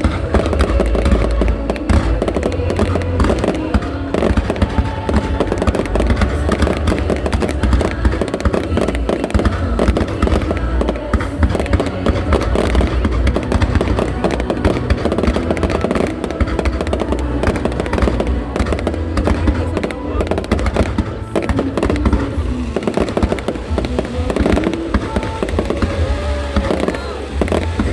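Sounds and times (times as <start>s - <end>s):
fireworks cracks and booms: 0.0s - 27.9s
music playing: 0.0s - 27.9s.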